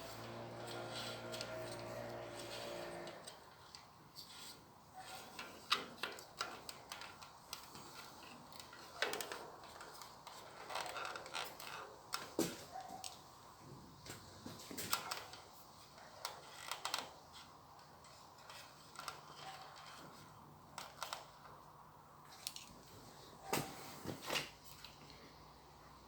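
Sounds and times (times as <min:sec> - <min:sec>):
small parts and tools handled: 0:14.6 - 0:21.5.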